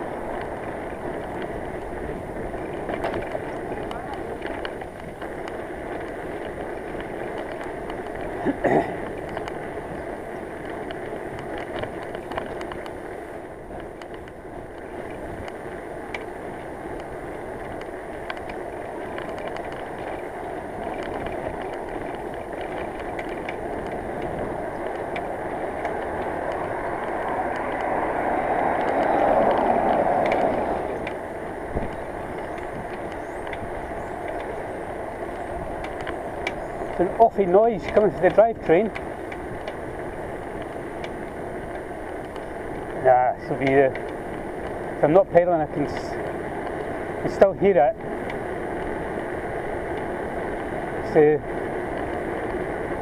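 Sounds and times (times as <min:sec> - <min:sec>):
bicycle tyre and wind noise: 0:00.0 - 0:53.0
rear hub clicking and clanking: 0:00.0 - 0:53.0
rushing noise: 0:24.3 - 0:36.9.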